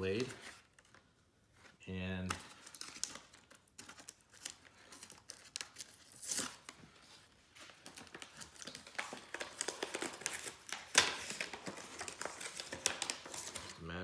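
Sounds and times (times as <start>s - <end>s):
plastic packaging crinkling: 2.2s - 14.0s.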